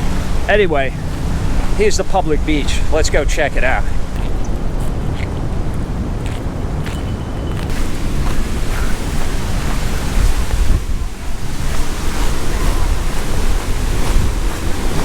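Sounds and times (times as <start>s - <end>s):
heavy surf breaking: 0.0s - 4.7s, 7.7s - 15.0s
wind buffeting microphone: 0.0s - 15.0s.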